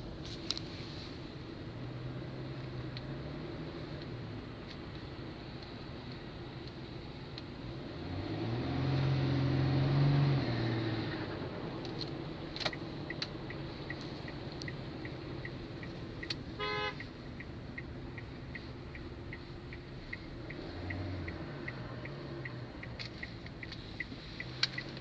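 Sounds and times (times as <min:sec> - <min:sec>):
car engine revving: 0:01.7 - 0:25.0
light ticking: 0:11.8 - 0:25.0.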